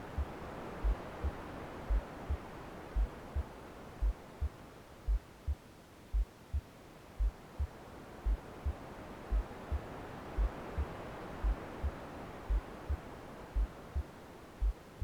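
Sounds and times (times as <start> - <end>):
soft rushing white noise: 0.0 - 15.0
heartbeat double thump: 5.1 - 5.3, 6.1 - 7.7.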